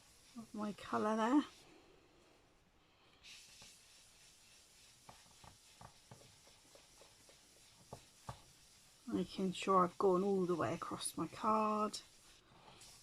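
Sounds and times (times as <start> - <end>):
brush rubbing on cardstock: 0.0 - 1.7, 3.2 - 13.0.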